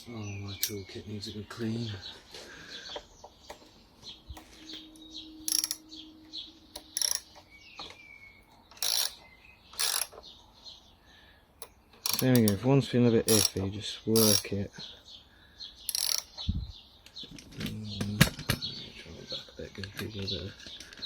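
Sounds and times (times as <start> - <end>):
tools clinking: 4.7 - 5.9, 6.8 - 7.9, 8.7 - 9.2, 9.8 - 10.2, 11.6 - 12.6, 13.2 - 13.6, 14.2 - 14.5, 15.9 - 16.3
ratchet wrench clicking: 5.5 - 5.8, 6.8 - 7.4, 8.8 - 9.2, 9.8 - 10.1, 11.6 - 12.6, 13.3 - 13.6, 14.2 - 14.5, 15.9 - 16.3.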